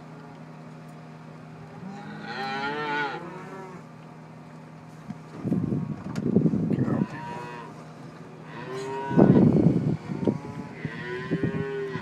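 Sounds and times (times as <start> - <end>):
steady low hum: 0.0 - 12.0
cow mooing: 1.8 - 3.9, 6.8 - 7.8, 8.4 - 12.0
loud rumbling noise: 8.6 - 12.0.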